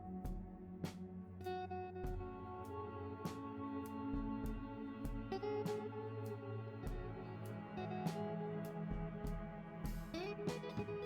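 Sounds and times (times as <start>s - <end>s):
guitar over a steady beat: 0.0s - 11.0s.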